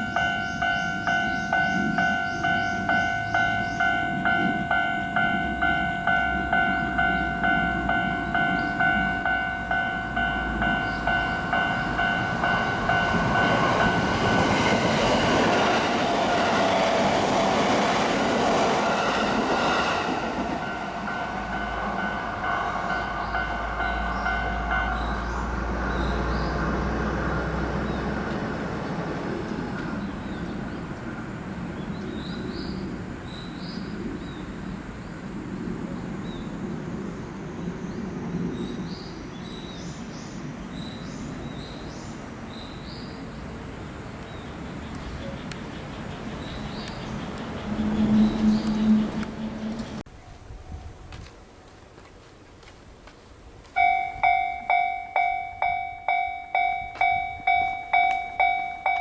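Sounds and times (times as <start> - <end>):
train rumble and wheel clatter: 0.0 - 59.0
level crossing bell dinging: 53.8 - 59.0.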